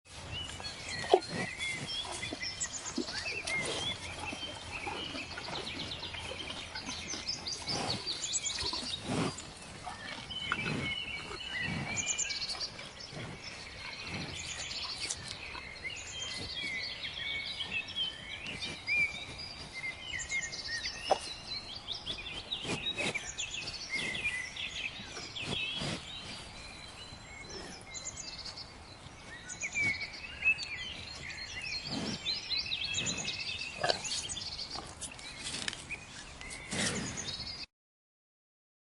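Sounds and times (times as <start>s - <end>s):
cattle tearing grass: 0.1s - 21.4s, 22.0s - 27.9s, 33.1s - 37.3s
birds chirping: 0.1s - 37.7s.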